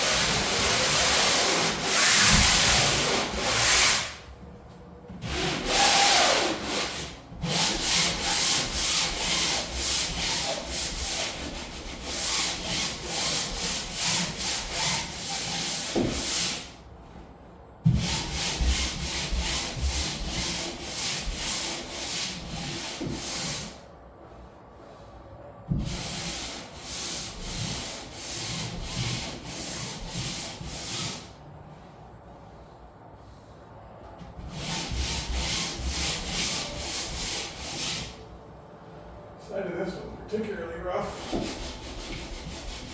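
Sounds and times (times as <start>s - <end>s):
sandpaper rubbing on wood: 0.0s - 4.2s, 5.3s - 16.8s, 18.0s - 23.8s, 25.8s - 31.3s, 34.5s - 38.2s, 41.0s - 42.9s.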